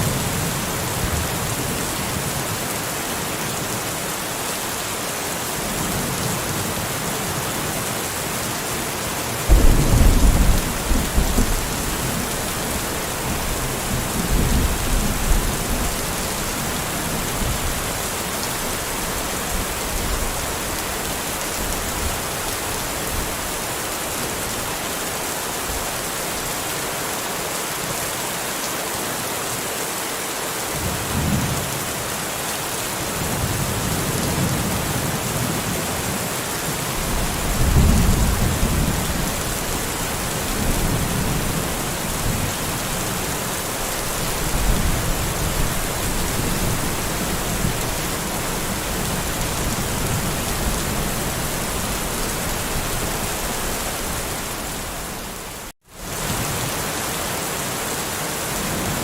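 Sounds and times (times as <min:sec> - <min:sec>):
steady rain: 0:00.0 - 0:59.0
thunder rumbling: 0:09.5 - 0:17.9, 0:37.0 - 0:55.3.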